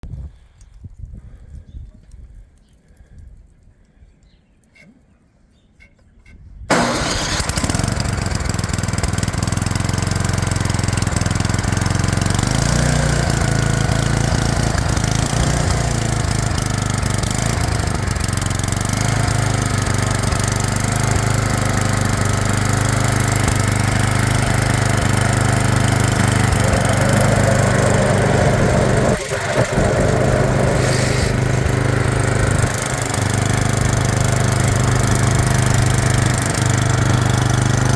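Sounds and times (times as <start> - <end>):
snowblower engine running: 6.7 - 37.9.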